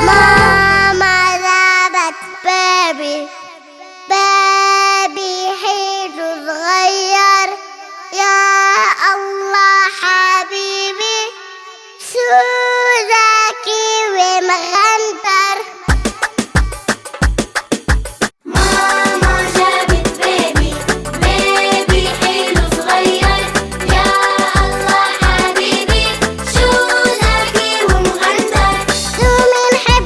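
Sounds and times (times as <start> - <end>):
low beat: 0.0 - 1.2
girl singing: 0.0 - 16.9, 18.4 - 26.0, 26.6 - 30.0.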